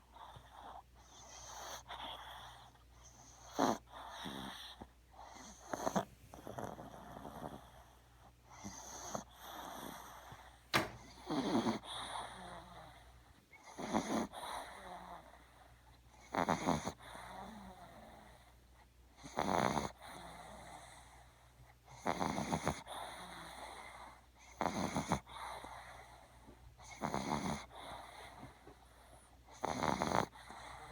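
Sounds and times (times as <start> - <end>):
puppy breathing quietly: 0.0 - 19.3
puppy snoring: 0.1 - 18.5, 19.2 - 21.3, 21.9 - 30.9.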